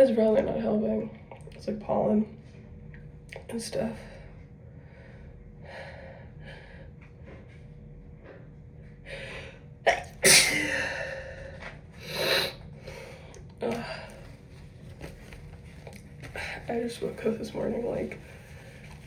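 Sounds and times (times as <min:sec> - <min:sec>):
faint breaths: 0:04.0 - 0:07.5
person sneezing: 0:09.9 - 0:11.2.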